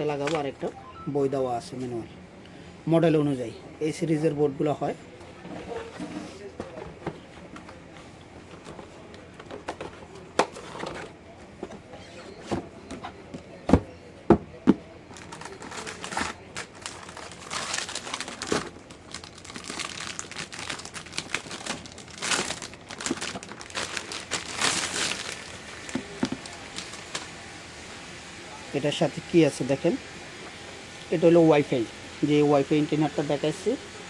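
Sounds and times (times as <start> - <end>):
plastic wrapping crinkling: 15.1 - 27.3.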